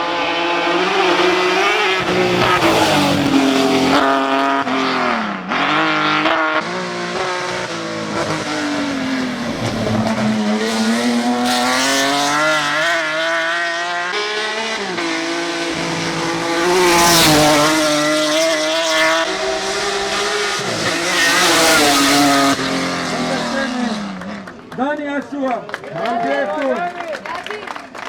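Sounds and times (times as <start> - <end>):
race car engine revving: 0.0 - 24.8.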